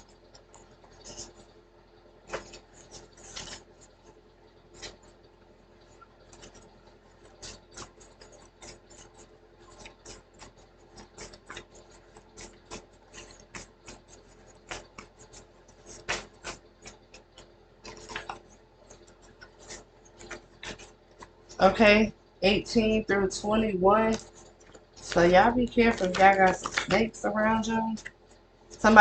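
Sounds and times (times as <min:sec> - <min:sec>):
faint steady hum: 0:00.0 - 0:29.0
small objects clicking and tapping: 0:25.9 - 0:27.0.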